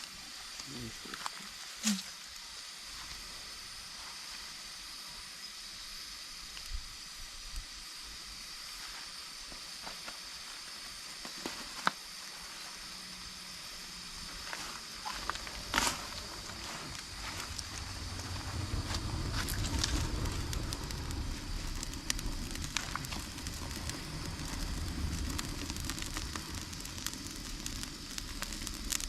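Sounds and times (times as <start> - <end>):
campfire hissing and crackling: 0.0 - 29.0.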